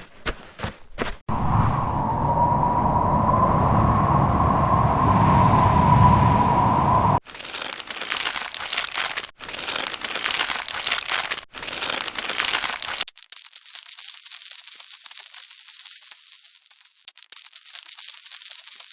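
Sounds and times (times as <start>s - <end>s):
jingling with high ringing tones: 13.1s - 18.9s.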